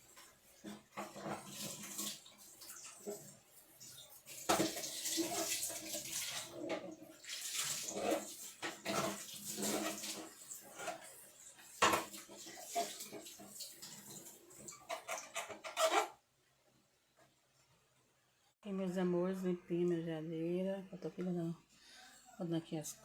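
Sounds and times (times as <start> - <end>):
water running and splashing: 0.0 - 15.6.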